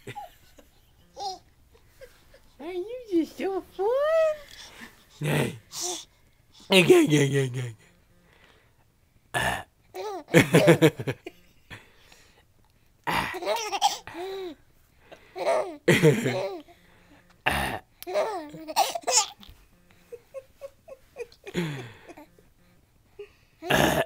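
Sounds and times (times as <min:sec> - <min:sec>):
baby giggling and laughing: 0:00.0 - 0:02.7, 0:09.9 - 0:11.1, 0:13.3 - 0:14.6, 0:15.4 - 0:16.7, 0:18.1 - 0:19.5, 0:20.1 - 0:22.3
burping sounds: 0:09.3 - 0:09.7, 0:13.0 - 0:13.4, 0:17.4 - 0:17.9, 0:23.6 - 0:24.0.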